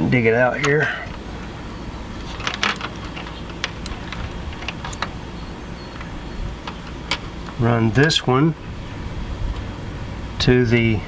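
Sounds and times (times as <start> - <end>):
steady low rumble: 0.0 - 11.0
wires and connectors clicking: 0.4 - 8.2.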